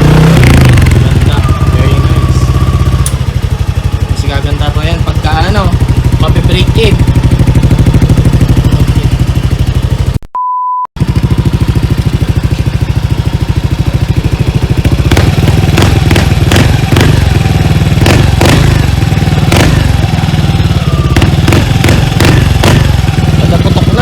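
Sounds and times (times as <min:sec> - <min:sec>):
exhaust cracking: 0:00.0 - 0:10.2, 0:11.0 - 0:24.0
scooter engine idling: 0:00.0 - 0:10.2, 0:11.0 - 0:24.0
short steady beep: 0:01.2 - 0:03.0, 0:10.3 - 0:10.9.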